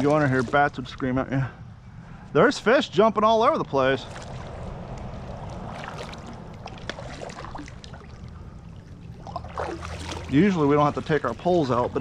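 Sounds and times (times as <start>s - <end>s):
water trickling and splashing: 0.0s - 1.1s, 3.8s - 12.0s.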